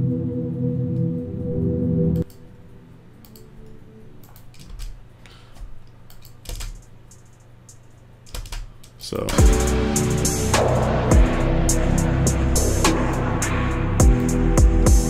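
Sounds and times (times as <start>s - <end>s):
dark synth pad chord: 0.0s - 4.2s, 9.4s - 15.0s
computer mouse clicks: 2.2s - 2.6s, 3.2s - 5.0s, 5.6s - 9.0s.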